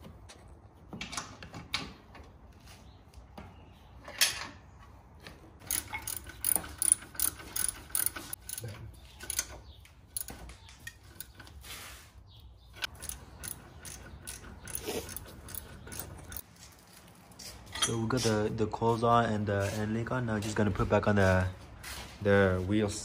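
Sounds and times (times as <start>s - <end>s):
ratchet wrench clicking: 5.6s - 8.6s, 12.8s - 16.4s.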